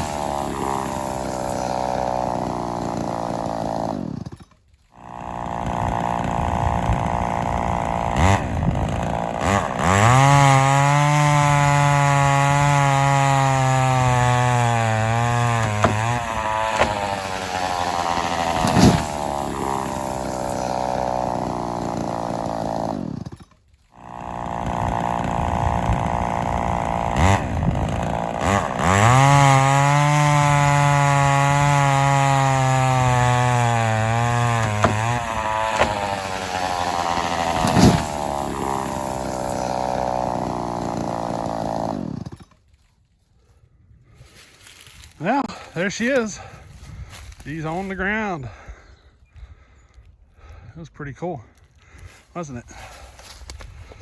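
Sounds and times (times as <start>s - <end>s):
chainsaw revving: 0.0s - 42.8s, 44.2s - 48.8s, 51.8s - 54.0s.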